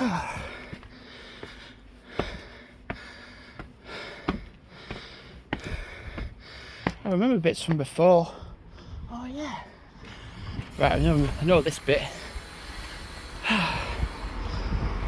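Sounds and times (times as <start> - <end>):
footsteps on pavement: 0.0 - 9.0, 9.9 - 11.4
breathing at microphone: 0.1 - 7.0, 8.3 - 9.1, 12.2 - 15.0.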